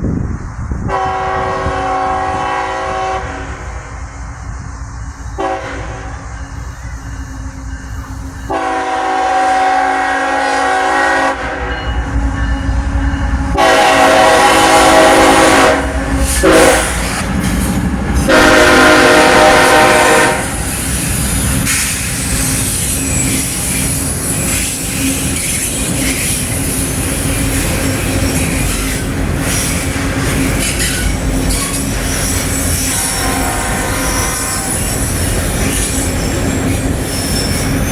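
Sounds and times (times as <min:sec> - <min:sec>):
train rumble and wheel clatter: 0:00.0 - 0:37.9
locomotive air horn blasts: 0:00.9 - 0:03.6, 0:05.4 - 0:06.2, 0:08.5 - 0:12.1, 0:13.0 - 0:17.2, 0:18.2 - 0:20.8, 0:31.6 - 0:35.0.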